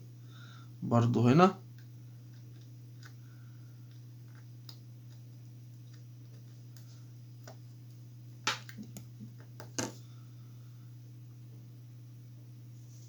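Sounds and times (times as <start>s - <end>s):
steady low hum: 0.0s - 13.0s
small clicks and taps: 3.9s - 10.0s.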